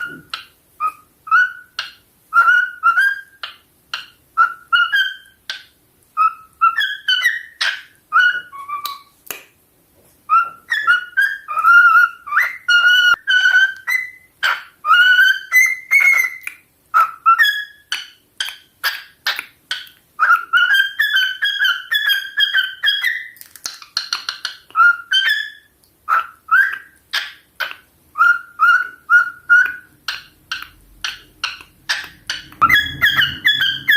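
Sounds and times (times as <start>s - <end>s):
cockatiel whistling and chirping: 0.0s - 9.2s, 10.3s - 33.9s.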